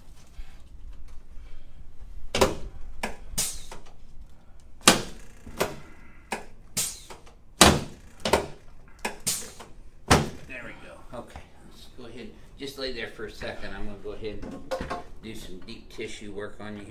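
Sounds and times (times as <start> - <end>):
faint rustling: 0.0 - 16.9
treatment table knocking: 14.3 - 15.2.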